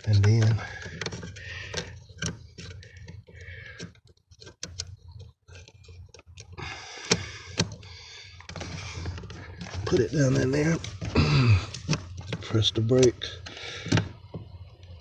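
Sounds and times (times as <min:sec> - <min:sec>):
handling rustle: 0:00.0 - 0:03.3, 0:08.4 - 0:14.2
plastic clicks and rattles: 0:00.0 - 0:07.8.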